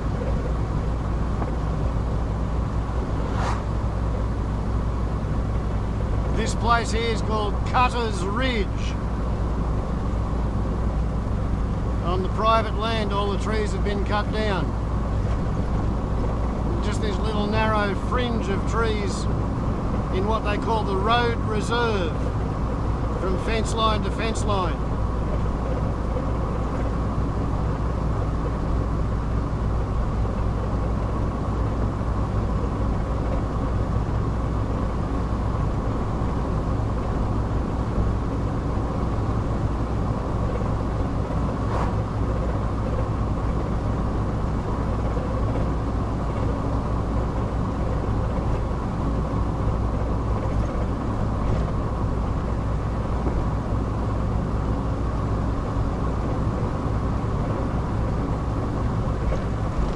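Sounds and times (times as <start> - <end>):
car cabin engine and road noise: 0.0 - 59.9.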